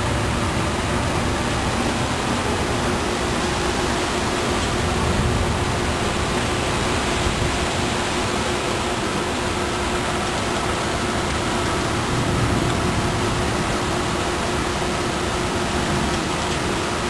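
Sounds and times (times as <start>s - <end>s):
rushing storm wind: 0.0s - 17.0s.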